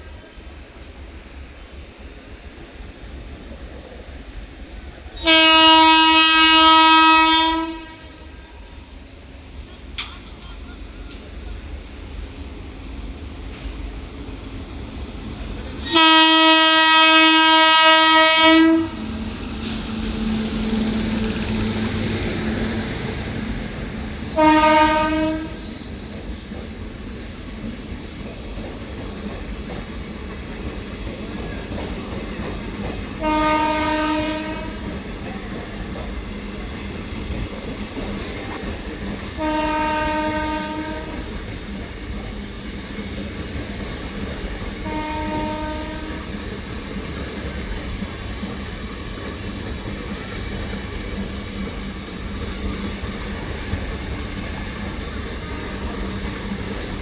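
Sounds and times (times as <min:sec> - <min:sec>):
train rumbling: 0:00.0 - 0:57.0
locomotive horn blasts: 0:05.2 - 0:08.3, 0:15.8 - 0:19.0, 0:24.2 - 0:25.6, 0:33.2 - 0:34.7, 0:39.4 - 0:41.2, 0:44.8 - 0:46.2.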